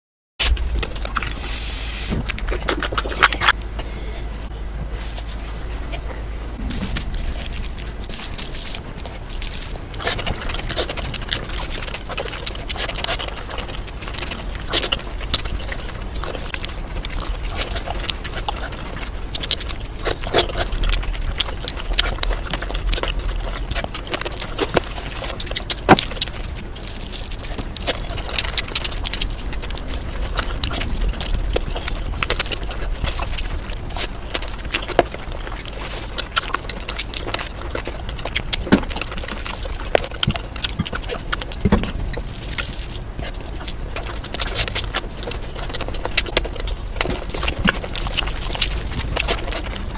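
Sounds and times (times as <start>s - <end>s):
chewing: 0.4s - 49.9s
low steady hum: 0.4s - 49.9s.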